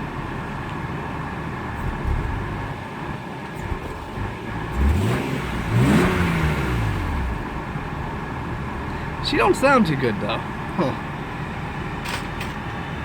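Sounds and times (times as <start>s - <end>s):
car engine idling and revving: 0.0s - 13.0s
man speaking: 9.2s - 11.0s.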